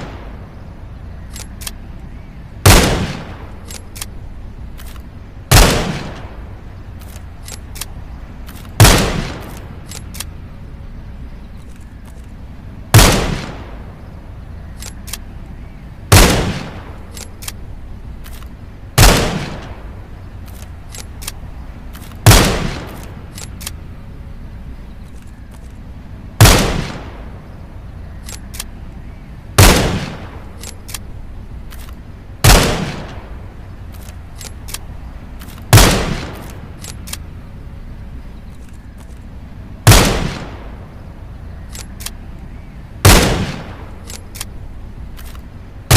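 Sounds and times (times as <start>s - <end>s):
rifle shots: 0.0s - 0.5s, 2.6s - 4.2s, 4.8s - 10.4s, 12.9s - 14.0s, 16.1s - 18.4s, 19.0s - 23.8s, 26.4s - 27.4s, 29.6s - 31.1s, 32.4s - 37.3s, 39.8s - 41.0s, 43.0s - 45.9s
faint small clicks: 1.3s - 2.1s, 3.6s - 5.2s, 6.9s - 8.8s, 9.4s - 10.4s, 14.7s - 15.7s, 17.1s - 18.6s, 20.4s - 22.2s, 22.8s - 23.9s, 24.9s - 25.9s, 28.0s - 29.0s, 30.5s - 32.2s, 33.0s - 37.4s, 38.2s - 39.4s, 41.6s - 42.6s, 44.0s - 45.8s.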